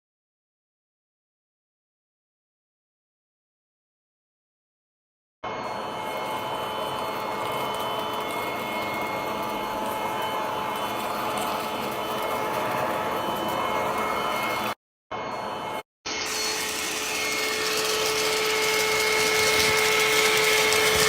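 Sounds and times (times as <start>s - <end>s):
vacuum cleaner running: 5.7s - 14.8s, 15.6s - 21.0s.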